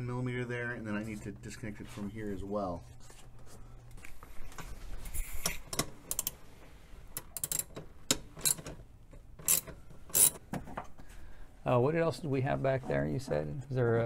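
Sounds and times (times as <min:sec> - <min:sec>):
sharp metal clicks and rattles: 0:07.2 - 0:08.8.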